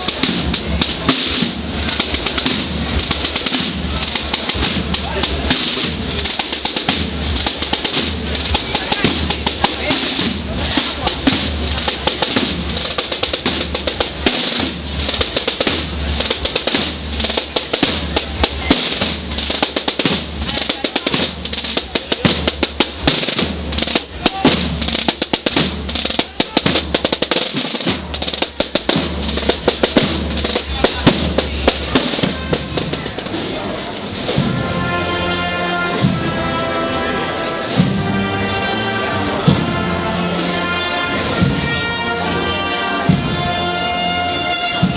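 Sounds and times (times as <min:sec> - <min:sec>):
bass drum beats: 0:00.0 - 0:35.0, 0:44.3 - 0:44.9
snare drum rolls: 0:00.0 - 0:38.2, 0:43.0 - 0:44.9.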